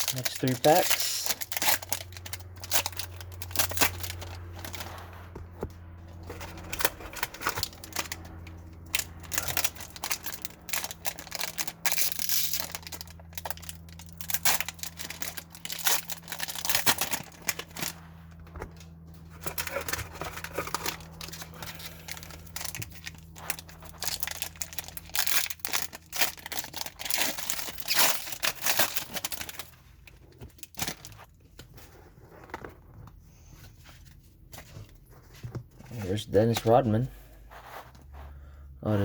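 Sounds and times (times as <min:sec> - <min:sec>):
card pack wrappers tearing and crinkling: 0:00.0 - 0:05.0, 0:06.3 - 0:18.0, 0:18.7 - 0:31.3
low hum: 0:00.0 - 0:33.3.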